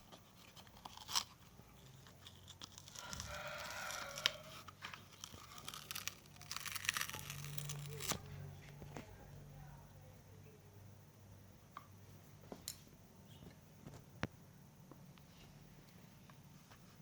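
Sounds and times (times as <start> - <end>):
rustling and crinkling: 0.0 - 9.2
faint low hum: 0.0 - 17.0
squeaky scrape: 1.8 - 8.3.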